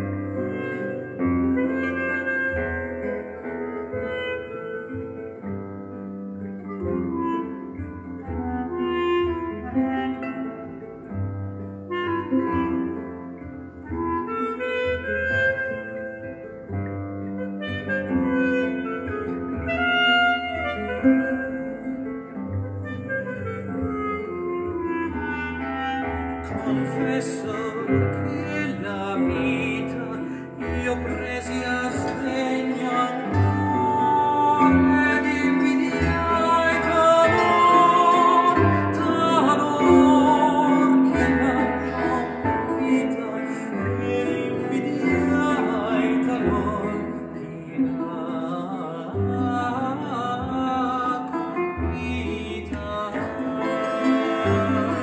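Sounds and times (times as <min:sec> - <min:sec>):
held wind instrument notes: 0:00.0 - 0:48.1, 0:51.3 - 0:55.0
singer with vibrato: 0:26.4 - 0:55.0.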